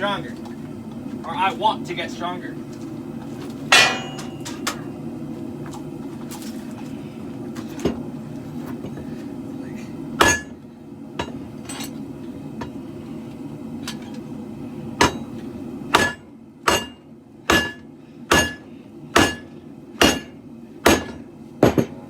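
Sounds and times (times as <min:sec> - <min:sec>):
forge burners rushing: 0:00.0 - 0:05.9
hammer blows on anvil: 0:03.7 - 0:04.8, 0:16.0 - 0:18.6, 0:19.2 - 0:22.0.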